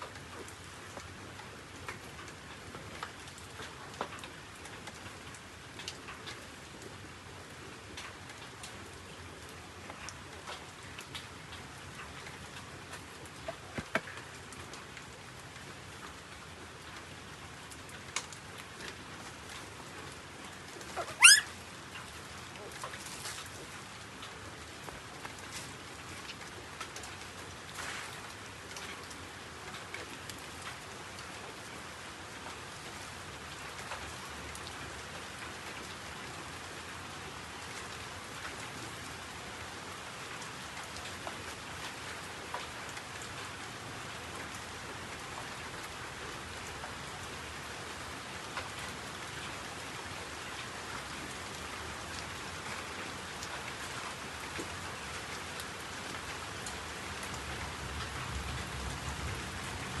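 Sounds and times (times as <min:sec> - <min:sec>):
steady rain falling: 0:00.0 - 1:00.0.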